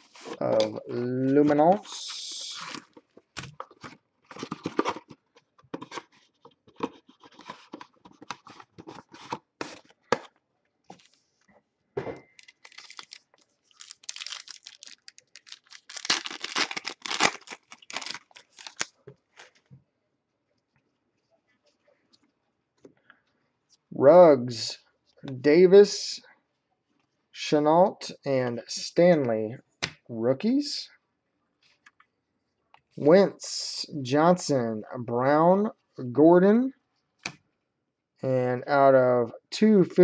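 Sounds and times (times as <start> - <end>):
plastic wrapping tearing and crinkling: 12.4 - 19.6.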